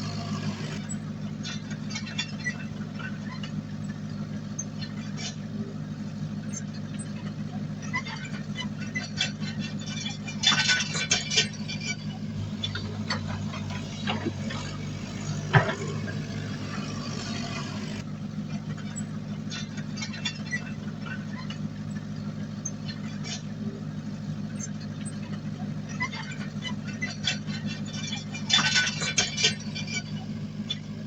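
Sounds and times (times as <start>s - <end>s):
heavy diesel machinery running: 0.0s - 31.0s
metallic clanks and rattles: 6.5s - 23.6s, 24.4s - 31.0s.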